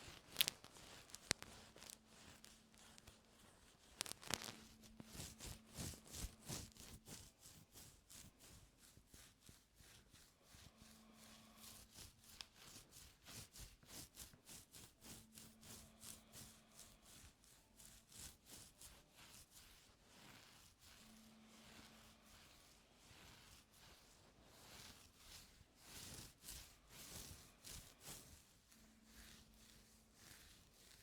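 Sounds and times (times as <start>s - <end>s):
ear tool scratching: 0.0s - 31.0s.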